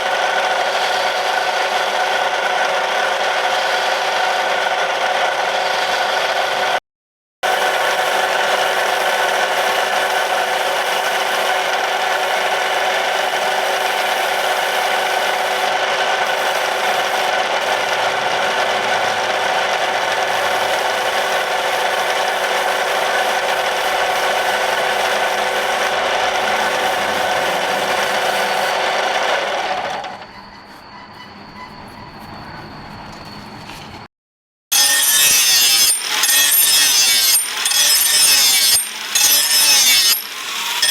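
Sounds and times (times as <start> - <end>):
power tool rubbing material: 7.5 - 18.2, 34.7 - 40.9.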